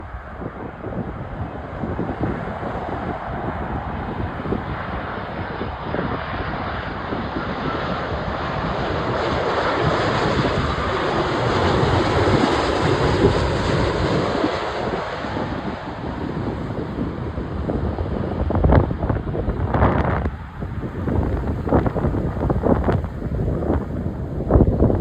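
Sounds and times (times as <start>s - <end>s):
jet airliner flying past: 0.0s - 25.0s
wind buffeting microphone: 0.0s - 25.0s.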